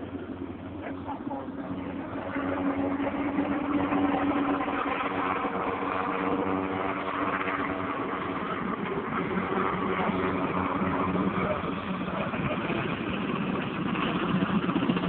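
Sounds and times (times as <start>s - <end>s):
helicopter engine and rotor: 0.0s - 15.0s.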